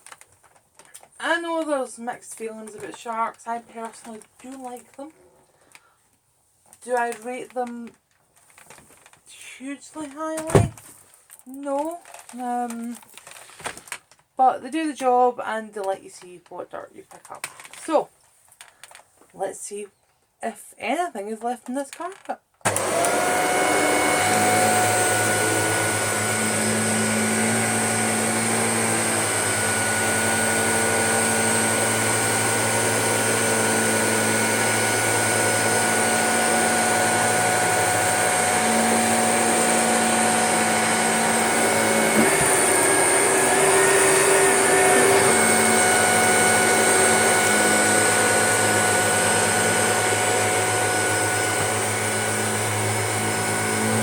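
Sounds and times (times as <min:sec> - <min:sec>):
vacuum cleaner running: 0:22.7 - 0:54.0.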